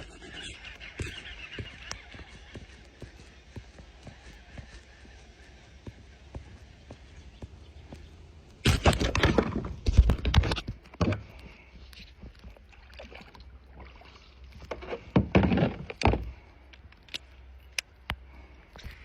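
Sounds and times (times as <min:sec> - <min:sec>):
paddle strokes splashing water: 0:11.5 - 0:16.0.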